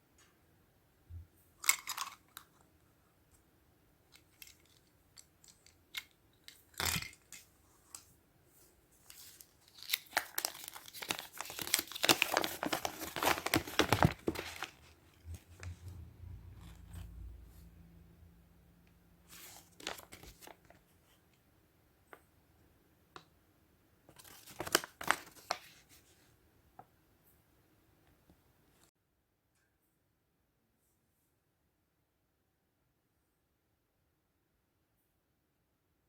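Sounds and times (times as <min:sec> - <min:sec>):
foil wrapper crinkling and tearing: 0:09.1 - 0:14.8, 0:19.4 - 0:20.6.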